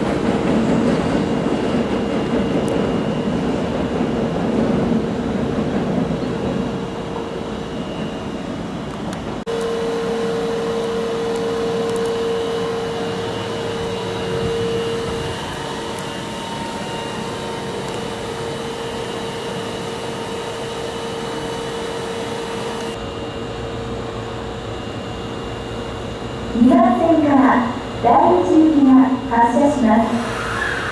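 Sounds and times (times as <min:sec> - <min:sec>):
subway train electrical whine: 0:00.0 - 0:30.9
fan hum: 0:09.5 - 0:30.9.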